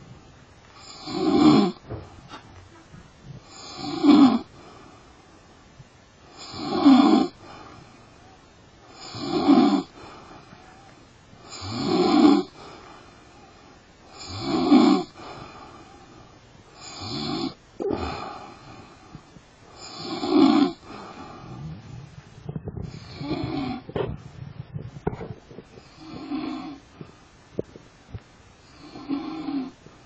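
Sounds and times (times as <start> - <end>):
person snoring loudly: 0.8 - 1.8, 3.4 - 4.5, 6.3 - 7.4, 9.0 - 9.9, 11.4 - 12.6, 14.1 - 15.2, 16.8 - 18.4, 19.8 - 22.2, 22.8 - 23.9, 25.8 - 26.8, 28.7 - 29.8.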